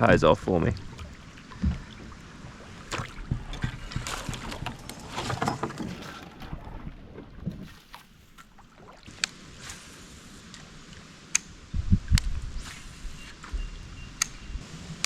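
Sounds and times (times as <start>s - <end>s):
kayak paddle splashing in water: 0.2s - 11.1s.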